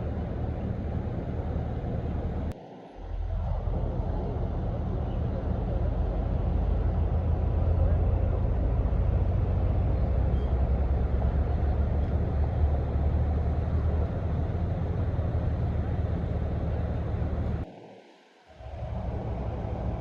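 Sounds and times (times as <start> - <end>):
low outdoor rumble: 0.0 - 20.0.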